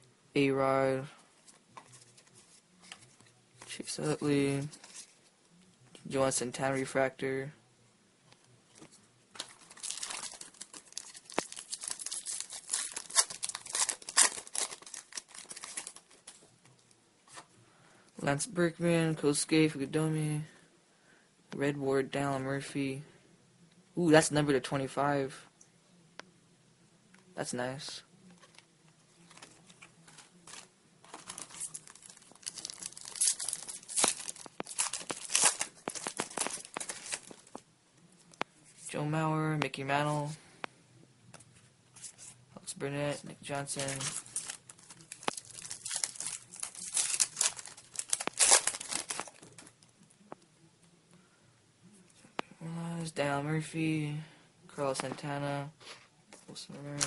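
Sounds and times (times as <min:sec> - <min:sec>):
foil wrapper crinkling and tearing: 0:09.4 - 0:16.4, 0:29.3 - 0:37.6, 0:43.5 - 0:49.8.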